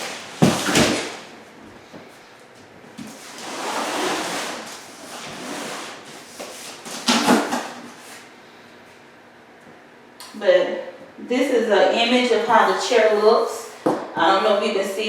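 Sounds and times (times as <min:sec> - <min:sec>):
cardboard box rustling scrape: 0:03.2 - 0:06.7.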